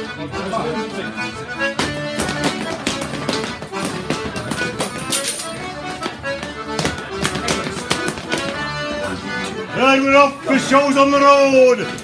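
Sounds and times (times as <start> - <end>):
accordion playing a dance tune: 0.0 - 12.0
sharp taps and clicks: 1.8 - 8.7.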